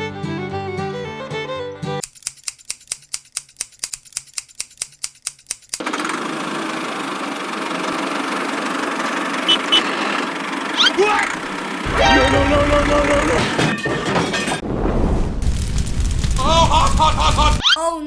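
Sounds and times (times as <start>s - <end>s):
fiddle music: 0.0s - 2.0s, 11.9s - 13.4s
small engine cranking and running: 2.0s - 11.9s.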